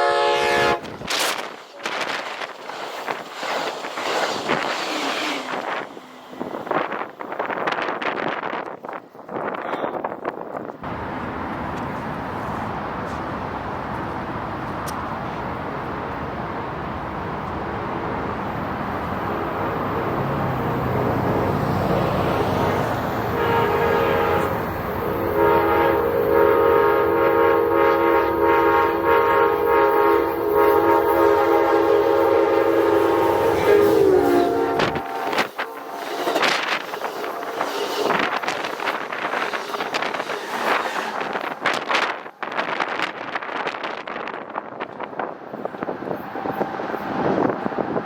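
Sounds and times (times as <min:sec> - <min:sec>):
train air horn: 0:00.0 - 0:00.9, 0:22.4 - 0:42.1
train rumble: 0:00.0 - 0:48.0.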